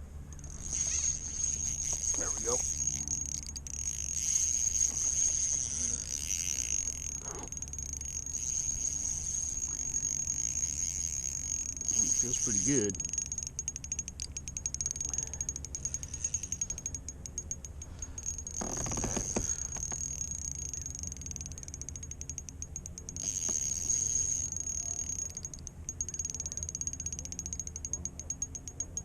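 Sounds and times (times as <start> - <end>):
fishing reel ticking: 0.4 - 29.0.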